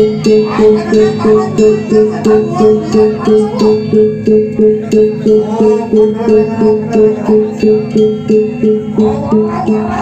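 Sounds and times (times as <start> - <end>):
held low tone: 0.0 - 10.0
high ringing metallic notes: 0.0 - 10.0
steady ceremonial drum beat: 0.0 - 10.0.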